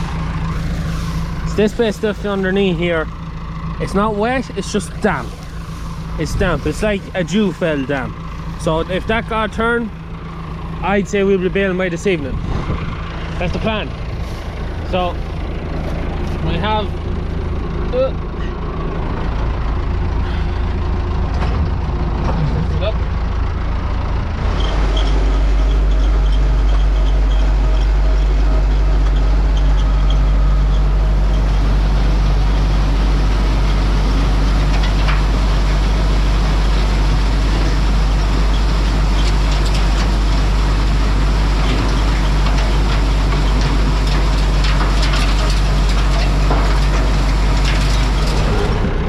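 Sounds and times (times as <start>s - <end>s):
tractor engine running under load: 0.0s - 49.0s.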